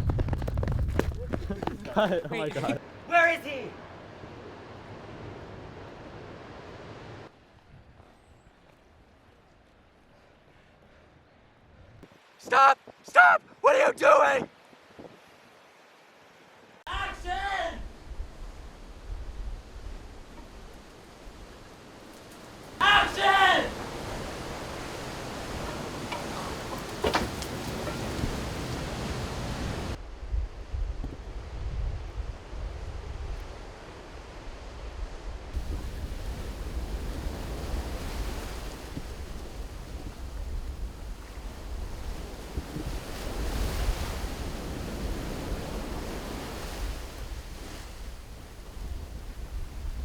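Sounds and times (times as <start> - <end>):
wind buffeting microphone: 0.0 - 2.1, 23.6 - 50.0.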